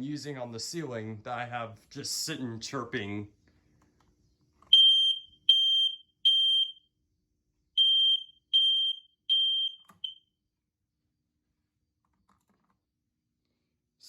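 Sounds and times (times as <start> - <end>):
smoke alarm beeping: 4.7 - 6.9, 7.8 - 10.2.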